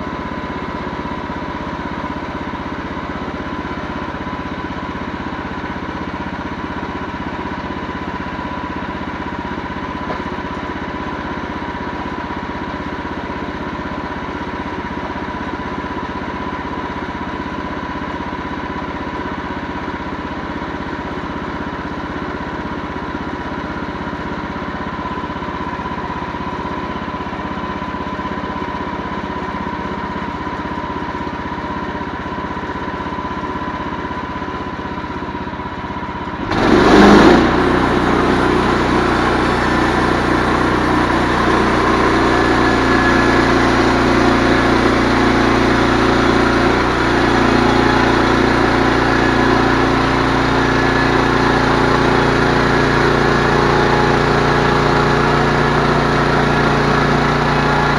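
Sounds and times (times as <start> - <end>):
engine running steadily: 0.0 - 57.9.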